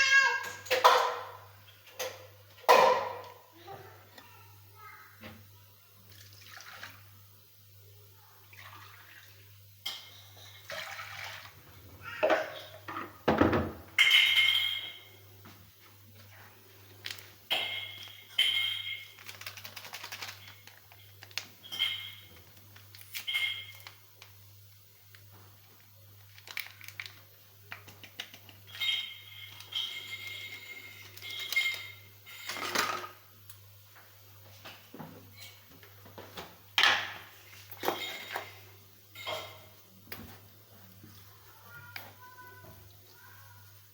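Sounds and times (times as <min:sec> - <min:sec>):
dishes and utensils clinking: 0:00.0 - 0:03.5, 0:09.8 - 0:11.1, 0:12.0 - 0:15.6, 0:17.0 - 0:24.0, 0:28.4 - 0:33.2, 0:34.5 - 0:40.4
water running and splashing: 0:06.1 - 0:07.2, 0:10.6 - 0:11.8.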